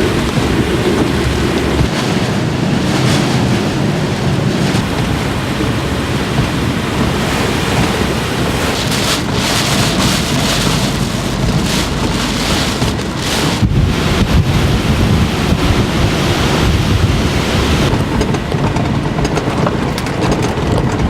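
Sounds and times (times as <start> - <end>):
wind buffeting microphone: 0.0 - 21.0
heavy rain hissing: 4.8 - 17.9.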